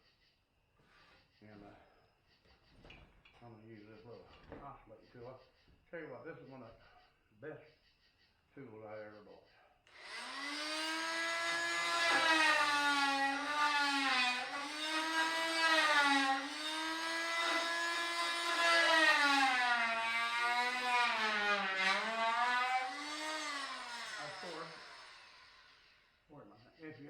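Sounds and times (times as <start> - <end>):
oscillating multi-tool whining: 9.9 - 26.3.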